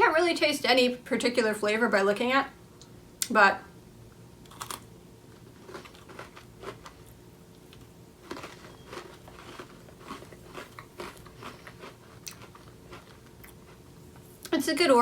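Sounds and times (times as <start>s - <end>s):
person crunching a cookie: 4.4s - 13.9s.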